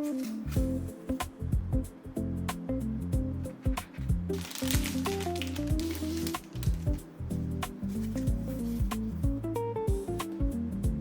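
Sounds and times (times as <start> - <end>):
instrumental music with low thumps: 0.0 - 11.0
hissy rustling noise: 3.8 - 9.2.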